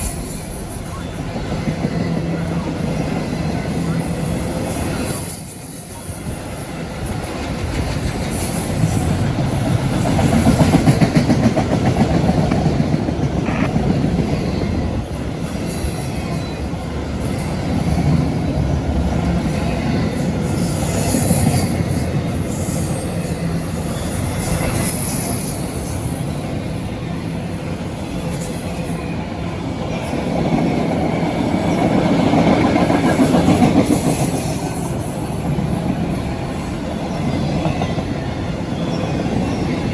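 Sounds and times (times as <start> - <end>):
freight train rolling past: 0.0 - 39.9
wheel squeal: 1.9 - 7.2, 19.5 - 32.1.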